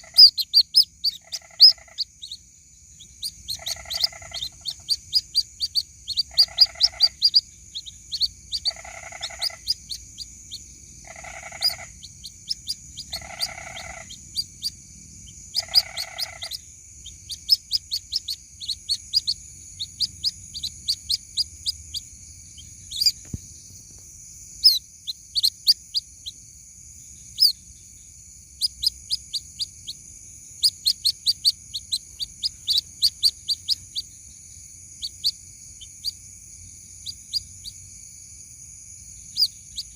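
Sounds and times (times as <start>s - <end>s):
chicks peeping: 0.0s - 2.4s, 3.0s - 23.4s, 24.6s - 26.0s, 30.6s - 34.1s.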